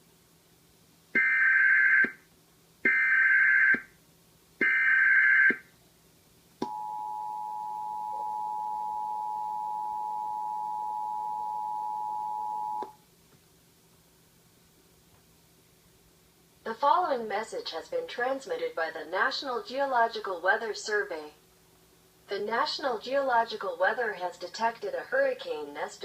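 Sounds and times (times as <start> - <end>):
two-tone attention signal: 6.7 - 12.9.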